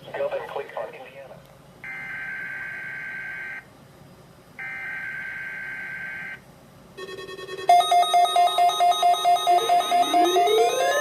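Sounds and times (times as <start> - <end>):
pulsing electronic tone: 7.7 - 11.0
buzzy electronic sound: 8.4 - 11.0.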